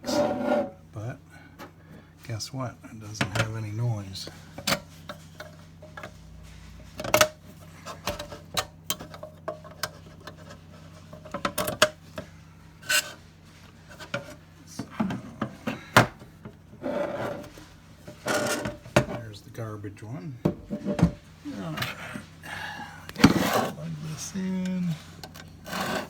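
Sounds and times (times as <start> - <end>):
cables handling clicks and knocks: 4.5 - 12.3, 24.6 - 25.6.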